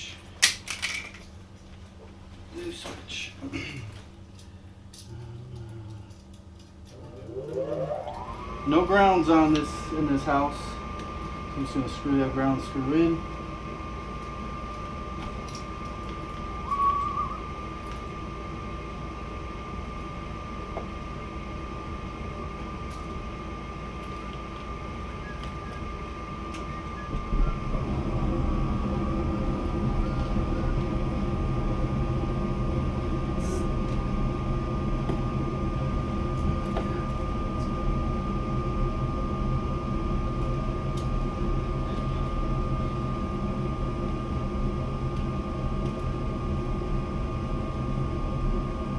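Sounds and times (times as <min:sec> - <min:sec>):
machine hum: 0:02.4 - 0:48.9
louder lower hum: 0:06.8 - 0:11.5, 0:13.4 - 0:18.7, 0:24.5 - 0:48.9
high-pitched tone: 0:06.9 - 0:09.4.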